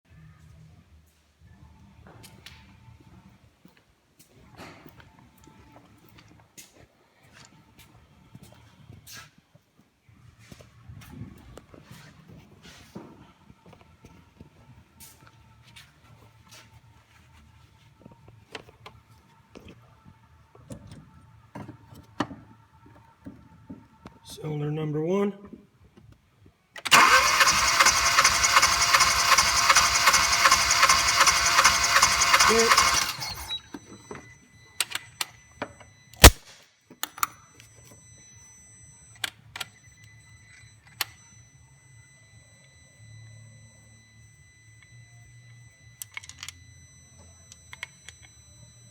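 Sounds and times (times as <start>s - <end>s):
faint low hum: 32.5s - 48.9s
faint high whine: 37.0s - 48.9s.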